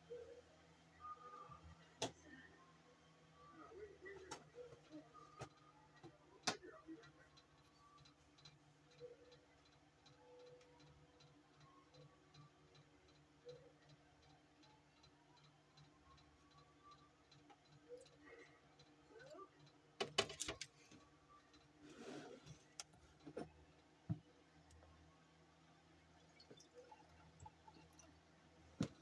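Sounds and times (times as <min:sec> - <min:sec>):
faint regular ticking: 0:06.9 - 0:21.8
clicks and clatter: 0:20.0 - 0:20.8.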